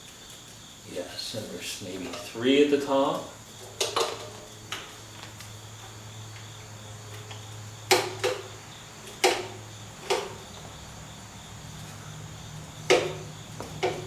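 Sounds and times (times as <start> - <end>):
hand tools clinking on metal: 1.9 - 2.5.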